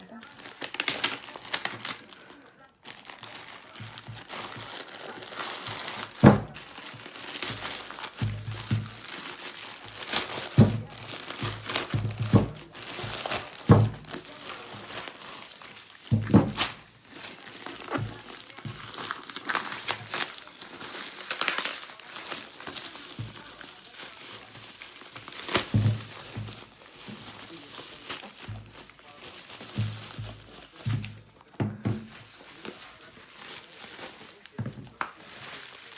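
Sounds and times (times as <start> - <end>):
packaging crinkling and rustling: 0.0 - 35.9
box thunks: 16.1 - 16.8.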